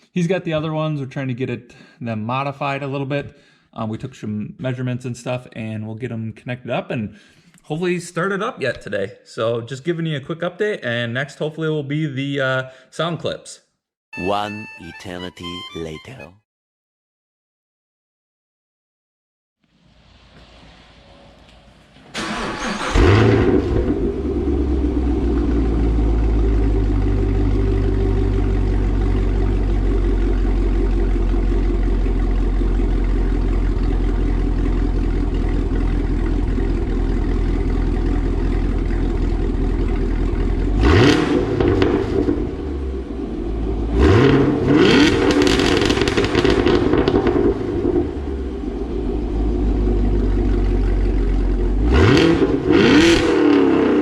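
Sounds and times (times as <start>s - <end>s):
car engine starting and idling: 19.8s - 54.0s
car engine revving: 20.1s - 31.4s, 34.9s - 54.0s.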